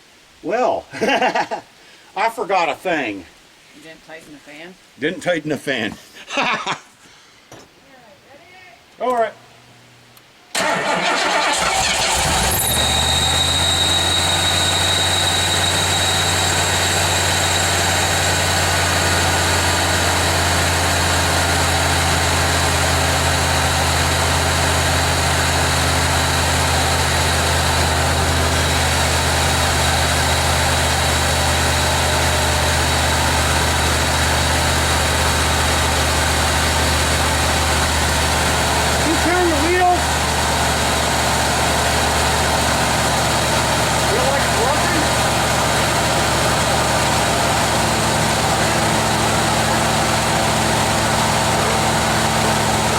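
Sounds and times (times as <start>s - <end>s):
car engine idling: 10.6s - 52.9s.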